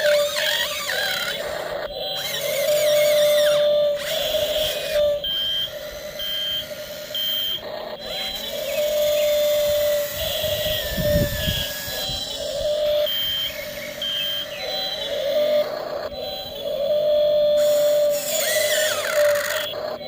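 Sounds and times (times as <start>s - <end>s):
electric motor whine: 0.0s - 20.0s
short high beeps: 13.0s - 15.0s.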